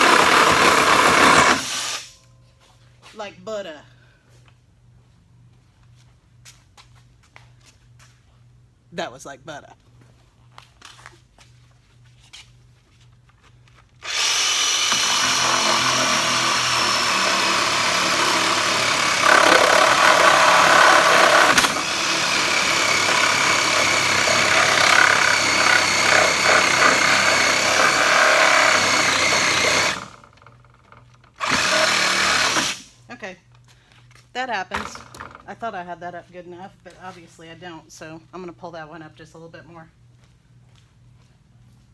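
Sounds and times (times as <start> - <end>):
reciprocating saw cutting wood: 0.0 - 2.1, 14.0 - 30.2, 31.4 - 32.9.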